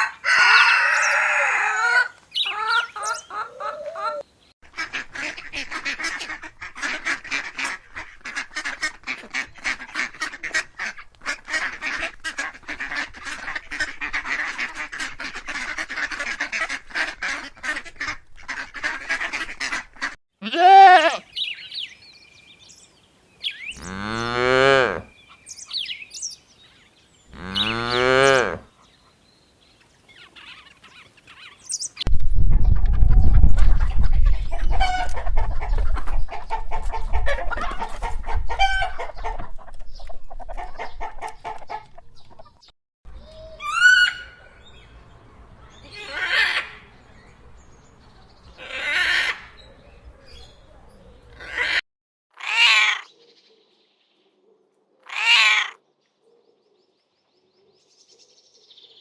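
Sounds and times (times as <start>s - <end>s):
chickens clucking and peeping: 0.0s - 4.2s, 33.9s - 42.7s
noisy yard background: 0.0s - 59.0s
goat bleating: 20.4s - 21.3s.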